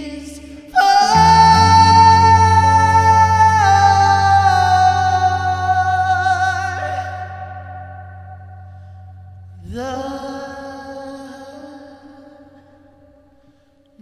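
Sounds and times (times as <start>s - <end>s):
singer holding long note: 0.7s - 11.8s
sustained low band chords: 1.1s - 9.9s.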